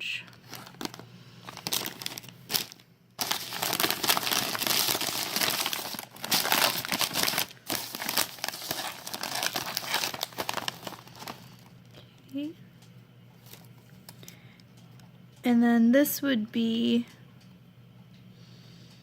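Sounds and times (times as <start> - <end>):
snack wrappers crinkling: 0.2 - 12.0, 13.4 - 14.4.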